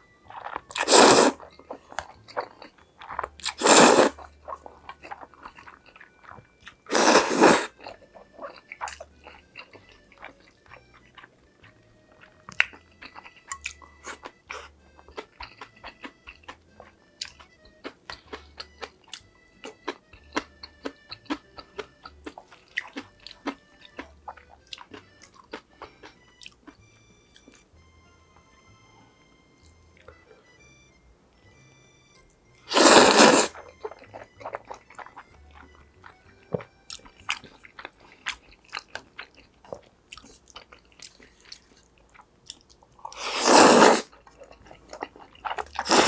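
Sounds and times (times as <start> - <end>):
crisp chewing: 0.0 - 27.7, 32.2 - 46.0
faint background music: 0.0 - 46.0
crunchy bite: 6.6 - 7.9, 32.7 - 33.6, 43.1 - 44.2, 44.9 - 46.0.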